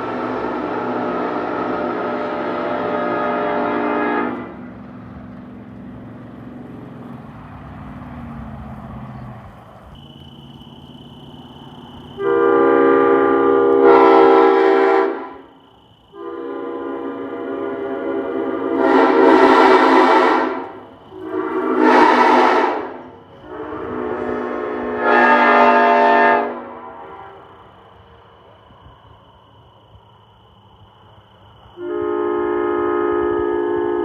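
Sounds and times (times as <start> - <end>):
locomotive air horn blasts: 0.0 - 4.7, 12.1 - 15.5, 16.1 - 27.5, 31.8 - 34.0
low train rumble: 0.0 - 34.0.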